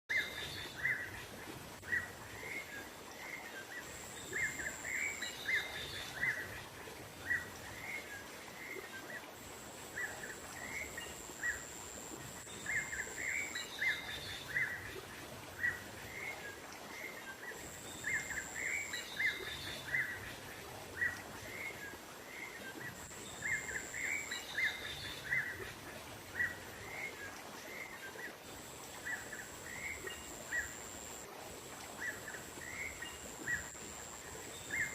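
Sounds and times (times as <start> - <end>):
outdoor nature ambience hiss: 0.1 - 34.9
thin high steady tone: 9.0 - 14.9, 28.5 - 34.9.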